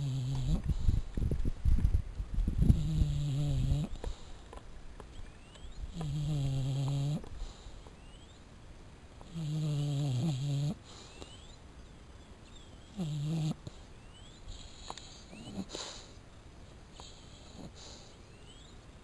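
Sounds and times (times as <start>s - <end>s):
pet snoring: 0.0s - 0.7s, 2.6s - 4.2s, 5.9s - 7.6s, 9.2s - 11.5s, 12.8s - 16.2s, 16.9s - 18.7s.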